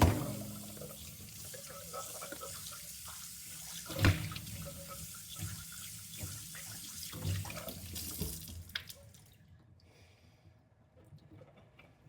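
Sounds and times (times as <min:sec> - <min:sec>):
tap water running into sink: 0:00.0 - 0:09.2.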